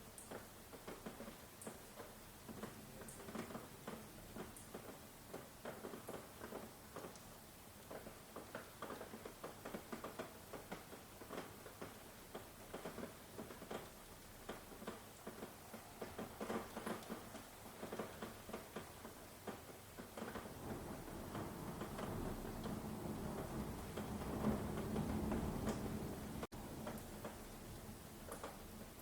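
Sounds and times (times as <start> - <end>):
rain falling: 0.0 - 29.0.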